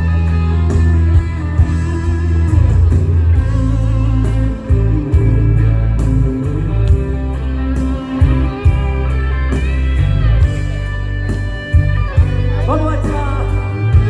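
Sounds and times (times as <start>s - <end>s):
live rock band playing: 0.0s - 14.0s
drum and cymbal hits: 0.7s - 14.0s.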